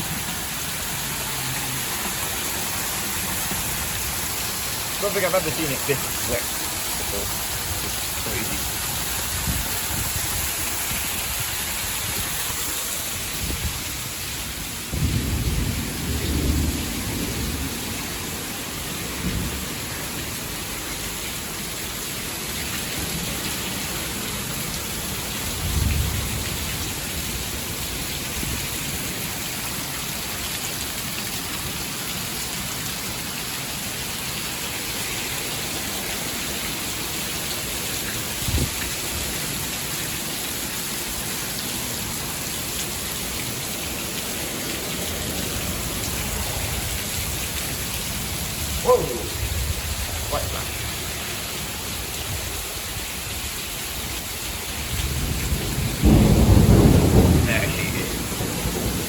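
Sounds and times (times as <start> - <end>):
heavy rain pouring: 0.0 - 59.0
muffled thunder rumbles: 14.9 - 20.3, 25.5 - 27.3, 44.4 - 51.0, 54.8 - 59.0.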